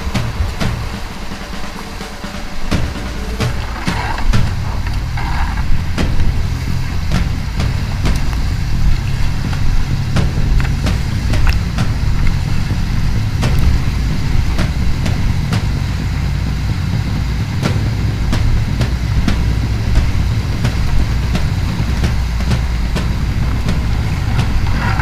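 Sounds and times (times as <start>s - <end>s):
whitewater rapids rushing: 0.0s - 25.0s
sharp clicks and knocks: 2.7s - 16.2s.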